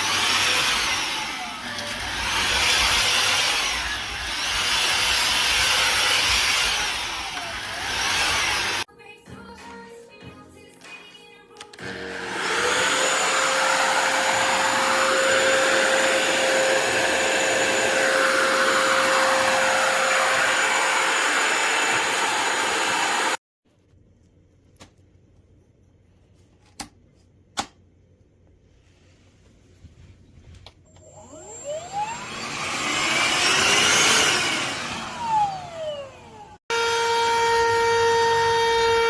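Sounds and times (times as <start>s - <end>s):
stick vacuum motor whining: 0.0s - 8.9s, 11.6s - 23.4s, 30.9s - 39.0s.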